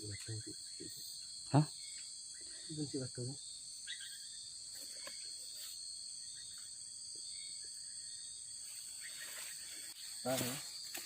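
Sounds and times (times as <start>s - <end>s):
night insects trilling: 0.0s - 11.0s.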